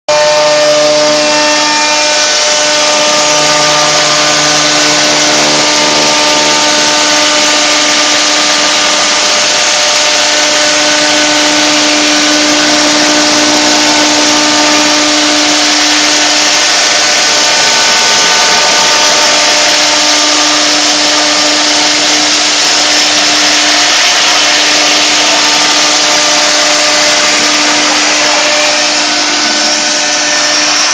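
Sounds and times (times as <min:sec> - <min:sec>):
router cutting aluminum: 0:00.1 - 0:30.9
spindle whine: 0:00.1 - 0:30.9
steady tones: 0:00.1 - 0:30.9.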